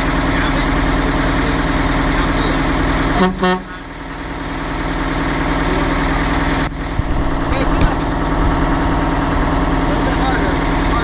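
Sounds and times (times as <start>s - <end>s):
diesel engine idling: 0.0s - 11.0s
horn toot: 3.1s - 3.8s.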